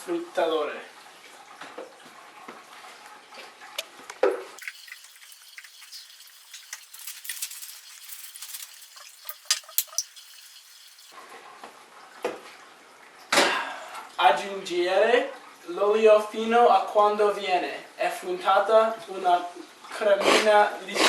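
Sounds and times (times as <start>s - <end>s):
kitchen utensils and dishes clinking: 4.6s - 11.2s.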